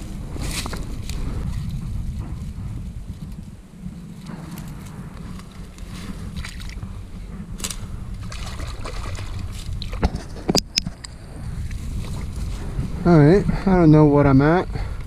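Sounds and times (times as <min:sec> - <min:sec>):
wind rumble on microphone: 0:00.0 - 0:15.0
water sloshing and splashing: 0:06.3 - 0:06.8, 0:07.6 - 0:10.7.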